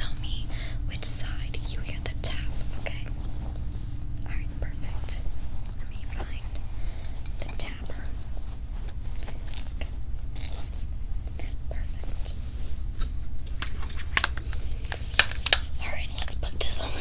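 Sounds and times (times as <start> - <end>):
steady low hum: 0.0 - 17.0
sharp clicks and crackles: 13.0 - 16.4.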